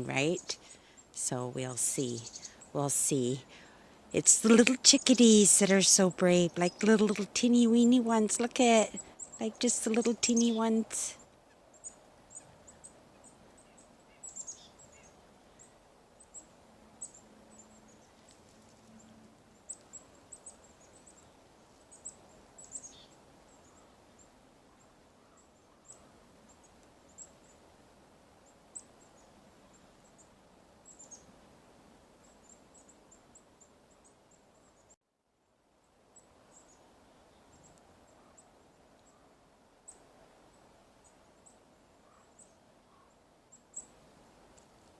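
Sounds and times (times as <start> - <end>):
chickadees calling: 0.0 - 27.6.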